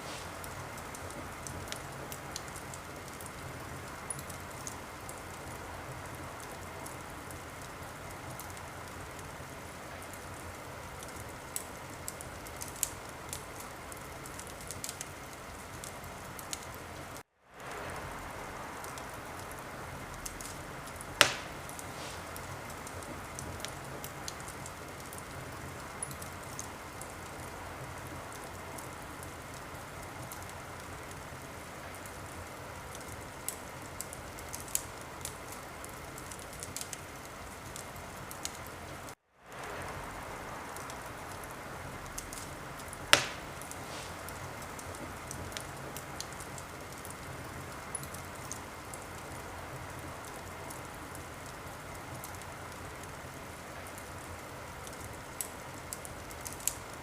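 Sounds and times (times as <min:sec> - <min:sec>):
wood fire crackling: 0:00.0 - 0:57.0
loud pop from fire: 0:20.2 - 0:23.7, 0:43.1 - 0:45.6.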